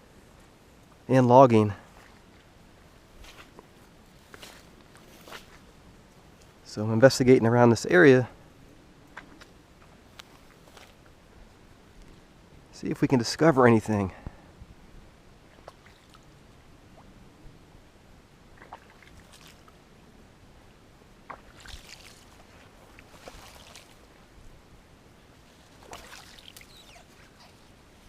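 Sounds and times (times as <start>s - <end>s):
brush rustling: 3.1s - 6.6s, 9.1s - 11.1s, 21.3s - 24.4s, 25.2s - 28.0s
soft water splashes: 15.4s - 17.2s, 18.5s - 19.8s, 21.2s - 24.4s, 25.5s - 28.0s.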